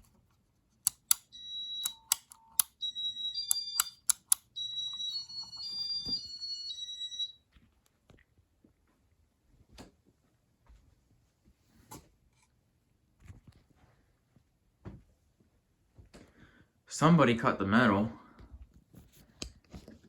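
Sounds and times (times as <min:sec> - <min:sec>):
electronic beeps: 0:01.3 - 0:07.4
button clicks: 0:03.5 - 0:04.4.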